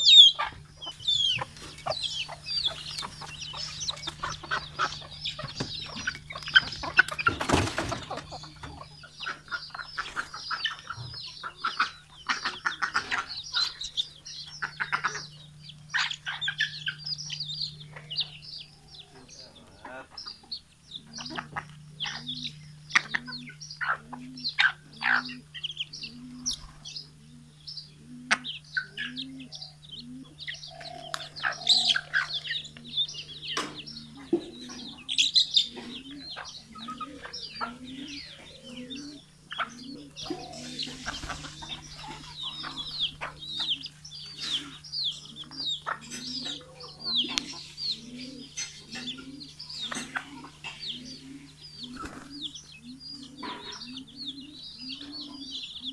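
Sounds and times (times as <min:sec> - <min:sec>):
chicks peeping: 0:00.0 - 0:55.9
hen clucking: 0:00.0 - 0:55.9
low hum: 0:00.0 - 0:55.9.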